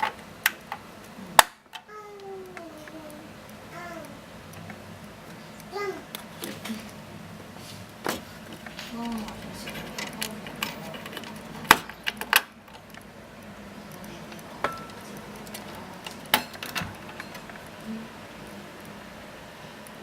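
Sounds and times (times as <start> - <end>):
plastic and metal parts clicking: 8.1 - 13.1.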